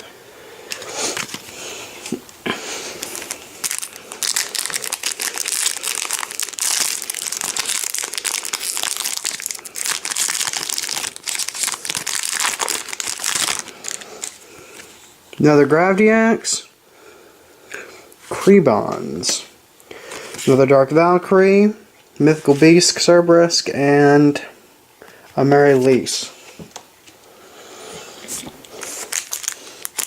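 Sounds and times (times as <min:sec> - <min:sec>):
foil wrapper crinkling: 0:02.9 - 0:15.0, 0:28.6 - 0:30.0.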